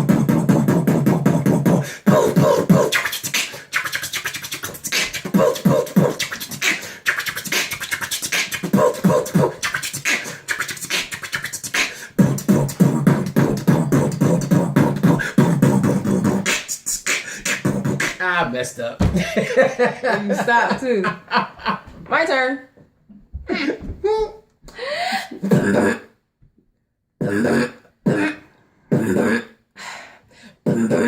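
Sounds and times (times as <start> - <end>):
beatboxing: 0.0 - 18.8, 25.2 - 26.2, 27.2 - 29.6, 30.6 - 31.0.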